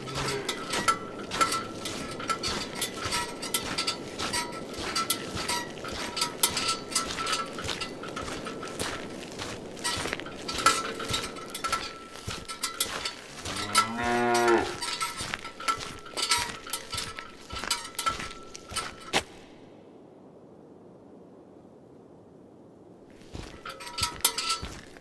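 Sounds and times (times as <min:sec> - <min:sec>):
cow mooing: 0:00.0 - 0:00.9, 0:13.4 - 0:14.8
metallic clanking: 0:00.0 - 0:19.3, 0:23.4 - 0:25.0.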